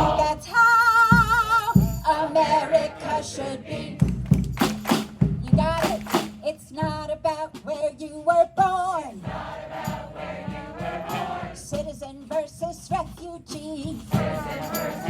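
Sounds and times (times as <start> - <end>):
chorus singing: 0.0 - 4.2, 9.2 - 11.8, 14.1 - 15.0.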